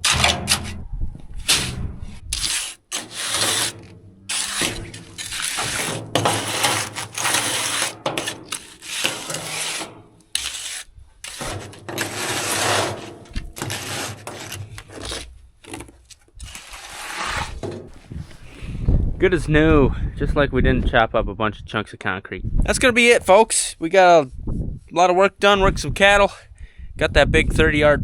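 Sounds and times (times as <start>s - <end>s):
trowel scraping cement: 0.0s - 0.8s, 1.4s - 18.0s.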